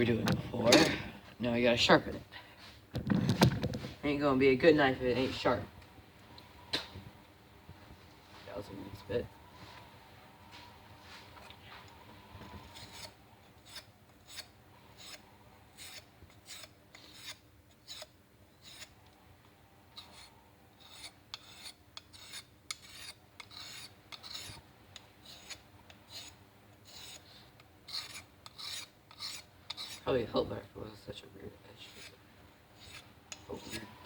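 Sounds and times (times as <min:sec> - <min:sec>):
blade scraping on sharpening stone: 0:12.7 - 0:15.2, 0:15.8 - 0:19.0, 0:20.0 - 0:24.6, 0:25.2 - 0:30.1, 0:32.8 - 0:33.9.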